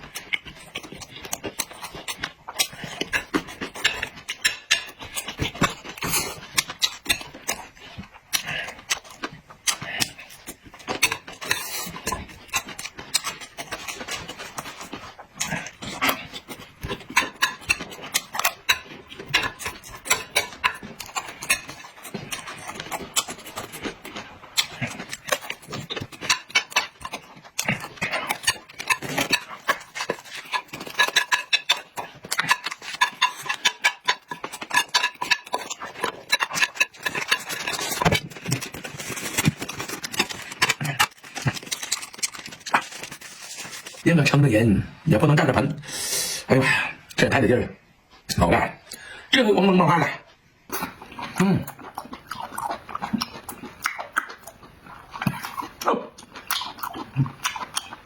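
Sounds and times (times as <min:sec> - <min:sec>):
person chewing noisily: 0:00.0 - 0:47.2, 0:50.7 - 0:58.0.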